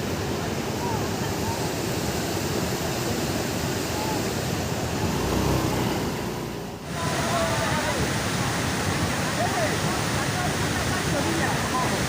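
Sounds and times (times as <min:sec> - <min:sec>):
floodwater rushing: 0:00.0 - 0:12.0.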